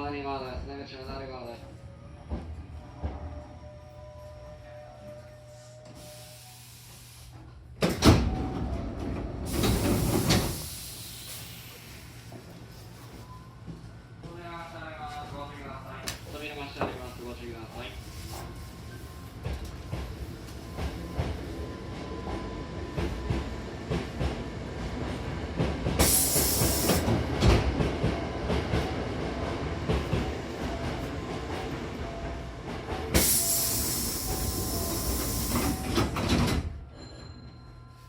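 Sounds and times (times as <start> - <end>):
train rumble and rail noise: 0.0 - 38.0.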